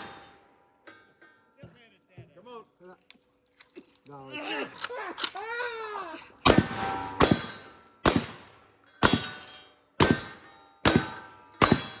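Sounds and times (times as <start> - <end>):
metallic ring: 0.0 - 1.6, 8.8 - 12.0
shotgun shots: 6.4 - 12.0.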